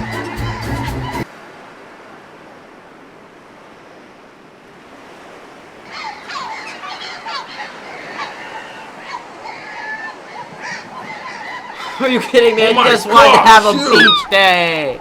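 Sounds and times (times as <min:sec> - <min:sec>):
ocean waves washing: 0:01.2 - 0:15.0
harsh bird calls: 0:05.9 - 0:15.0.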